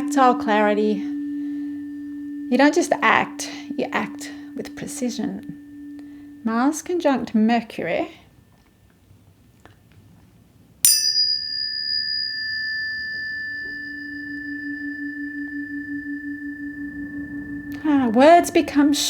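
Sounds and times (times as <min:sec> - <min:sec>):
low steady hum: 0:00.0 - 0:08.3, 0:12.2 - 0:19.0
tuning fork ringing: 0:00.0 - 0:08.4, 0:10.9 - 0:19.0.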